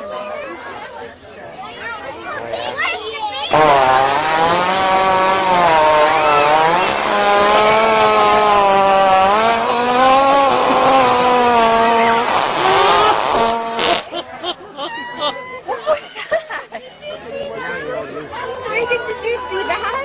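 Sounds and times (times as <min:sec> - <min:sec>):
hippopotamus farting: 0:03.5 - 0:14.1.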